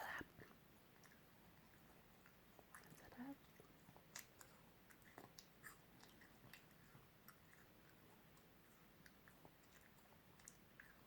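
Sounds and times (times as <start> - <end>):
toddler chewing wet mouth clicks: 2.2 - 11.0.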